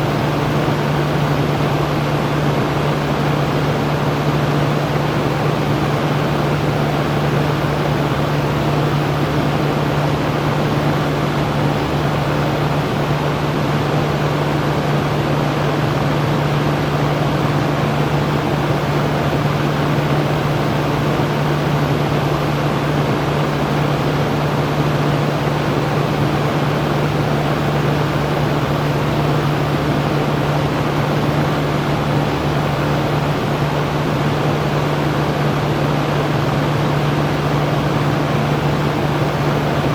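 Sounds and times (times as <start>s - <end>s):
electric fan running: 0.0s - 39.9s.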